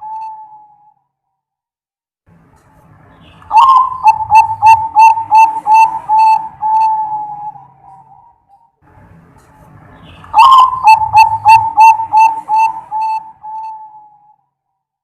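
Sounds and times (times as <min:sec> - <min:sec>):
dove cooing: 0:03.5 - 0:08.5, 0:10.3 - 0:14.3.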